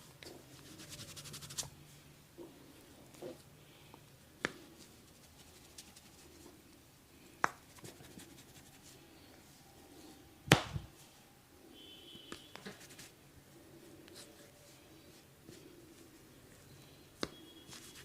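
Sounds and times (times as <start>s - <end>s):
hand slaps: 10.5s - 10.9s.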